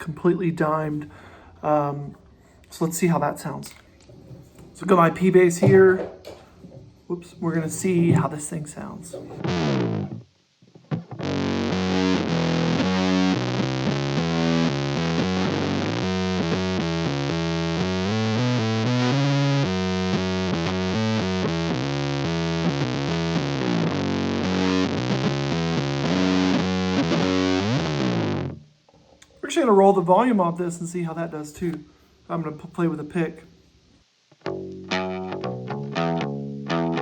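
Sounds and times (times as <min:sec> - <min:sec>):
distorted bass guitar notes: 0:09.2 - 0:28.7, 0:34.4 - 0:37.0.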